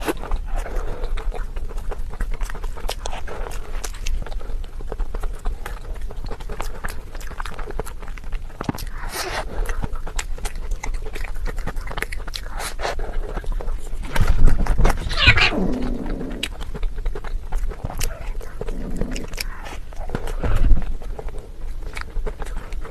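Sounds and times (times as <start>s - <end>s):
person chewing food crunchily: 0.0s - 22.9s.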